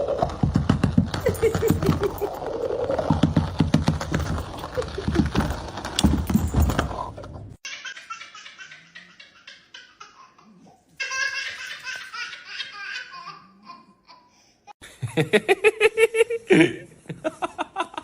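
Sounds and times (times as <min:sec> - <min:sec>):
high-pitched laughter: 0:01.2 - 0:02.4, 0:07.6 - 0:13.6.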